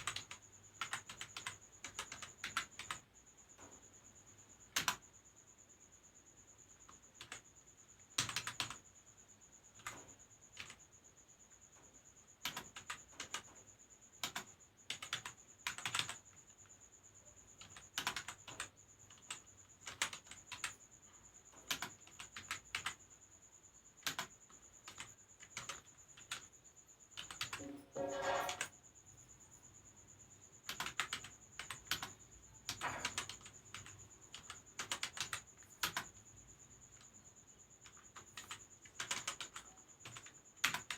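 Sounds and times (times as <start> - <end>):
typing on computer keyboard: 0.0 - 3.8, 4.7 - 5.1, 6.8 - 8.9, 9.7 - 11.0, 12.4 - 23.2, 24.0 - 26.5, 27.2 - 28.6, 30.6 - 37.2, 37.8 - 40.9.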